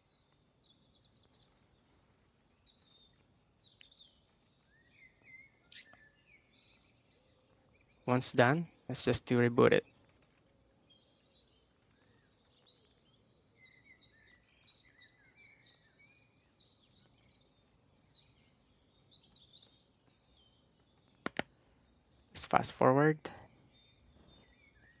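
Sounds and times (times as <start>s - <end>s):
faint bird chirps: 0.0s - 8.1s.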